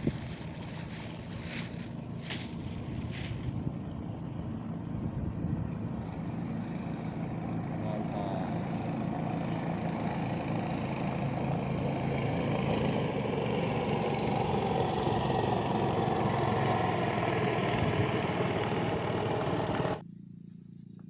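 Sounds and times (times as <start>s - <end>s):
small engine running: 0.0s - 21.0s.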